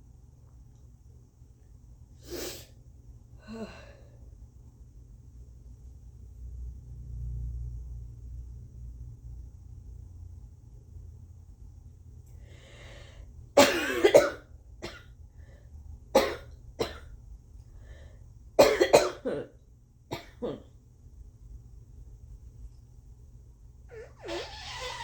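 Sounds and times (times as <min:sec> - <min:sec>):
woman coughing phlegmy: 0:13.6 - 0:15.1, 0:16.2 - 0:17.1, 0:18.6 - 0:20.7.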